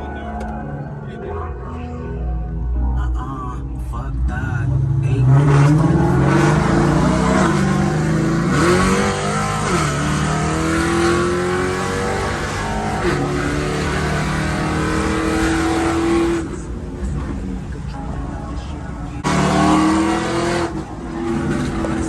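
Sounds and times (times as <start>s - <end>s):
car engine accelerating hard: 4.0s - 22.0s.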